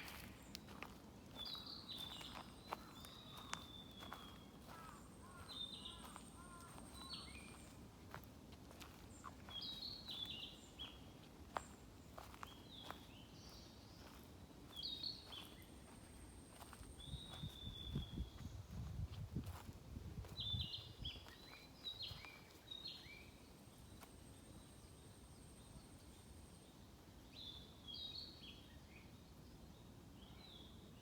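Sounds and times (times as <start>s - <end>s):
footsteps crunching on path: 0.0s - 23.2s
songbirds singing: 0.0s - 31.0s.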